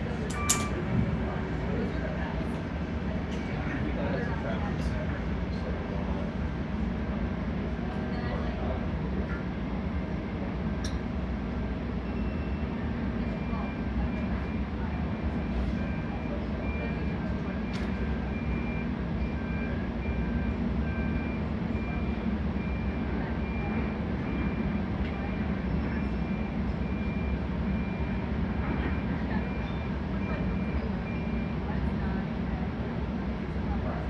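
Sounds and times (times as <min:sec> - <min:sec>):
backup alarm beeping: 0:00.3 - 0:01.2.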